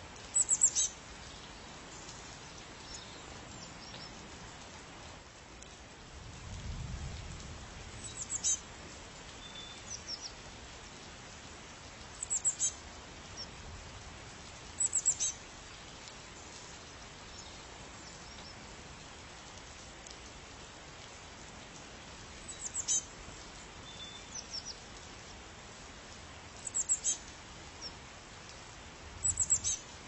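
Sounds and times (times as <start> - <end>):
background hiss: 0.0 - 30.0
songbird calling: 0.4 - 1.0, 8.0 - 8.6, 12.2 - 12.8, 14.8 - 15.4, 22.5 - 23.1, 26.6 - 27.2, 29.2 - 29.8.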